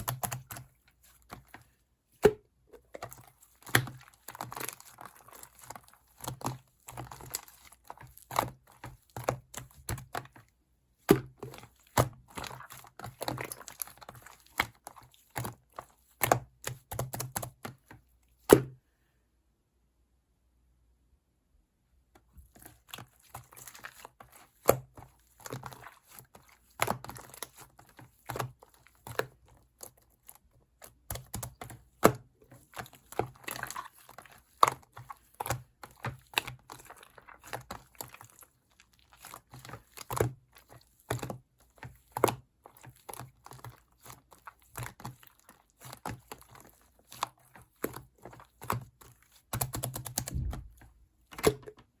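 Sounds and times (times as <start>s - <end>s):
objects and packaging handled: 22.2s - 52.0s.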